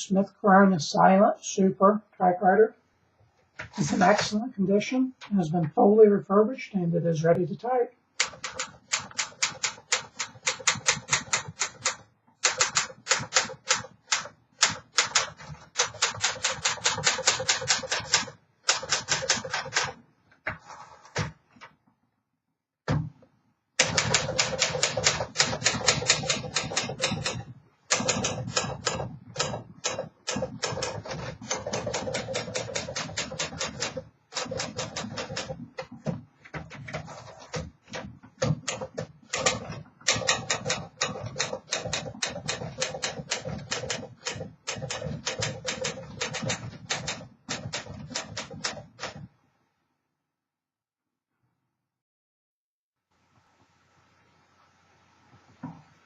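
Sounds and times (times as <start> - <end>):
manual typewriter key strikes: 8.2 - 19.9, 23.8 - 35.6, 38.5 - 49.3.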